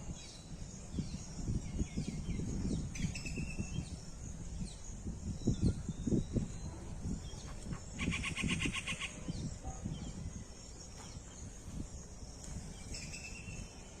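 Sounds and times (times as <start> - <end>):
faint high bird chirping: 0.1 - 14.0
bird trilled call: 7.8 - 9.3.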